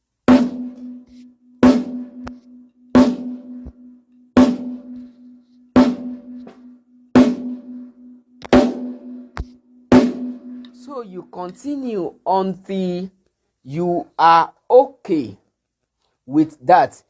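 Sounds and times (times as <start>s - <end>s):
snare drum hits: 0.3s - 2.4s, 3.0s - 3.8s, 4.4s - 5.1s, 5.8s - 7.7s, 8.5s - 10.8s.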